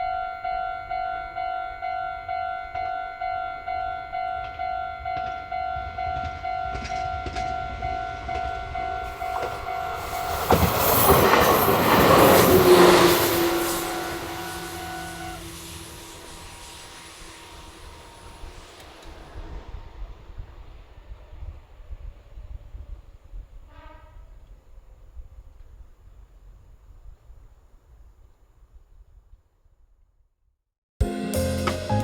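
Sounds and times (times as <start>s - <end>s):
level crossing warning bell: 0.0s - 18.8s
train passing at speed: 0.0s - 25.8s
wheels clattering over rail joints: 4.0s - 21.0s.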